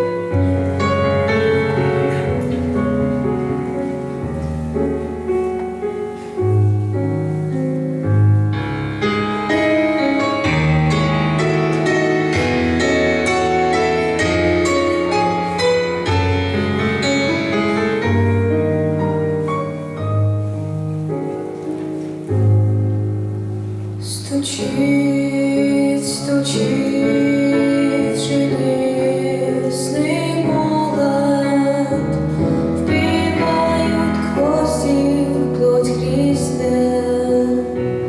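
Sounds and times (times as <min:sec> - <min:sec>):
keyboard playing slow chords: 0:00.0 - 0:24.2.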